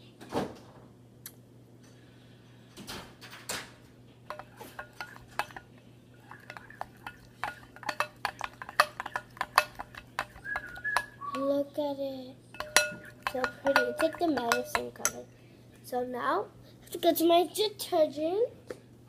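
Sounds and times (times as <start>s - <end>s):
spoon clinking against bowl: 4.3s - 11.2s, 12.5s - 15.3s
spoon scraping bowl: 4.3s - 11.2s, 12.6s - 15.3s.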